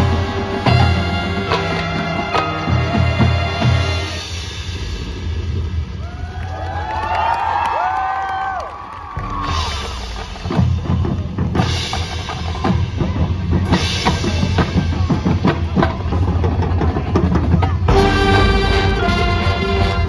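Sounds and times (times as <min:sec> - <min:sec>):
brass section playing: 0:00.0 - 0:04.4, 0:17.9 - 0:20.0
snare drums: 0:00.0 - 0:05.2, 0:09.0 - 0:20.0
bass drums: 0:00.0 - 0:08.0, 0:09.0 - 0:20.0.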